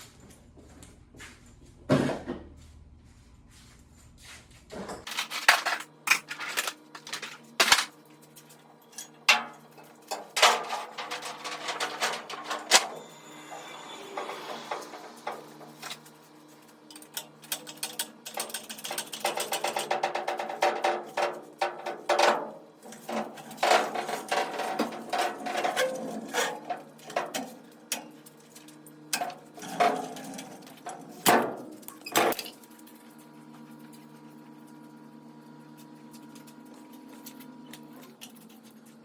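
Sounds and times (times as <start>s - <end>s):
tools and metal parts clanking: 4.8s - 13.1s, 16.9s - 33.0s.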